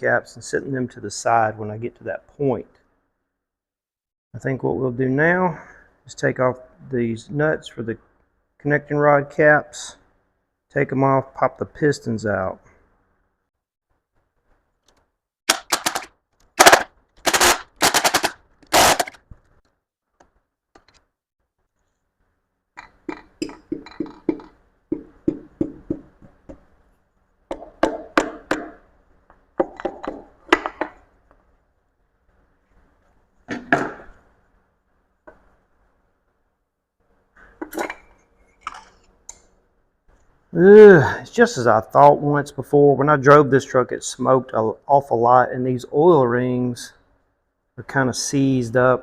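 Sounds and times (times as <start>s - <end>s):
impact wrench hammering: 16.6s - 19.2s, 23.1s - 26.6s, 27.5s - 28.8s
metal clinks and knocks: 22.8s - 25.7s.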